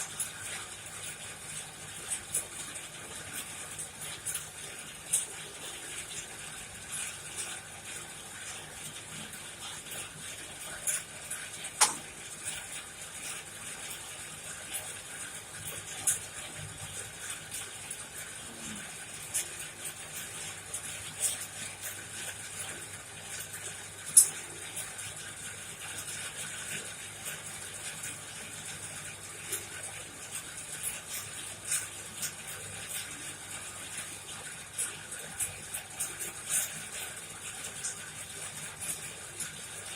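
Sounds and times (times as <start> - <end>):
fire crackles and pops: 9.7 - 14.0.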